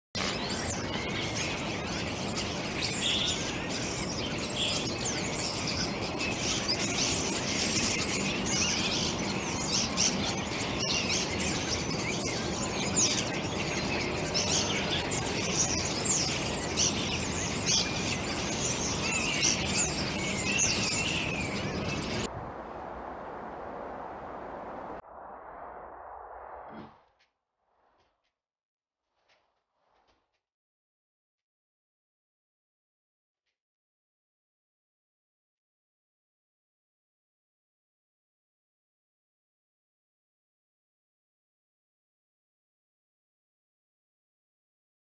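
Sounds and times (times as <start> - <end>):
birds chirping: 0.2 - 25.0.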